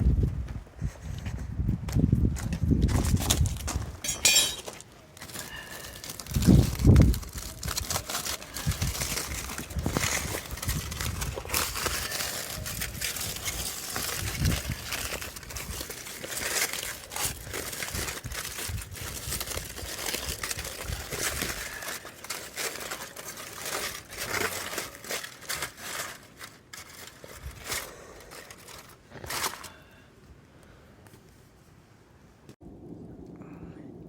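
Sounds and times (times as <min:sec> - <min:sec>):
aluminium foil crinkling: 0:02.9 - 0:29.9.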